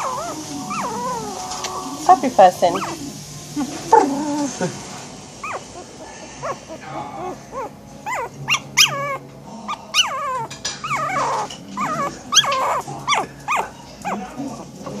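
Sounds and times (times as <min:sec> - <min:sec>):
dog whining yelps: 0:00.0 - 0:01.9, 0:02.8 - 0:03.0, 0:05.4 - 0:09.2, 0:09.9 - 0:14.3.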